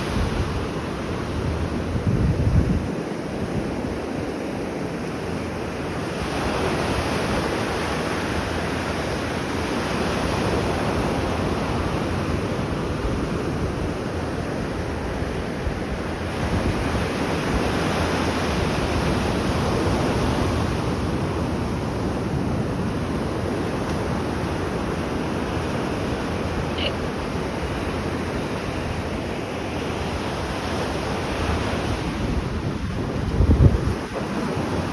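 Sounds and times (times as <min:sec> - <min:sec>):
wind buffeting microphone: 0:00.0 - 0:04.2, 0:10.3 - 0:34.9
waves breaking: 0:16.0 - 0:34.9.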